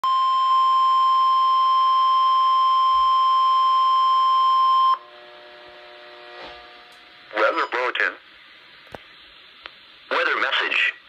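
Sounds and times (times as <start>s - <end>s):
steady high alarm tone: 0.1s - 8.1s.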